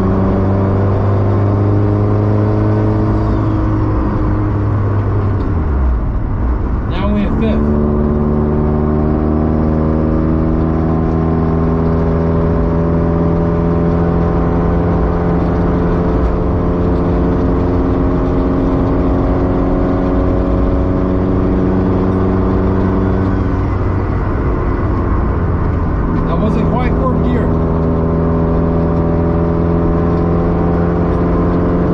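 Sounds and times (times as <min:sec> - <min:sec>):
car engine accelerating: 0:00.0 - 0:31.9.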